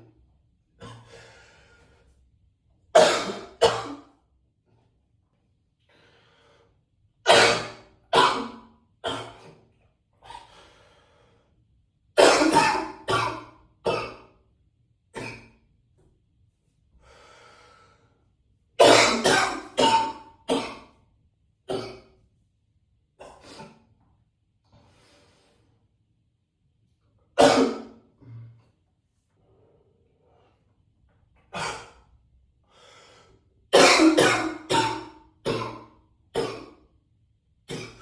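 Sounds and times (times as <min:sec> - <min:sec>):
man coughing hard: 0:03.0 - 0:04.0, 0:07.3 - 0:09.5, 0:12.2 - 0:14.3, 0:18.8 - 0:20.8, 0:27.4 - 0:28.5, 0:33.7 - 0:36.8.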